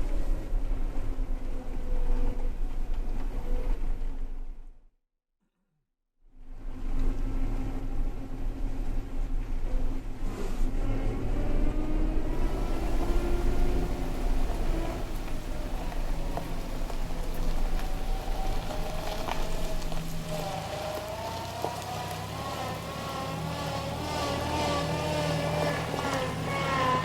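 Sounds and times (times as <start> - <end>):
car engine running: 12.3 - 27.0
scattered ticks: 12.4 - 23.1.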